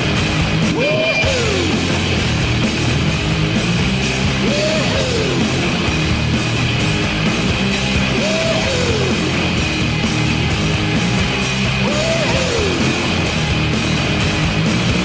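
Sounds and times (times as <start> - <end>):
loud hard rock song: 0.0 - 15.0.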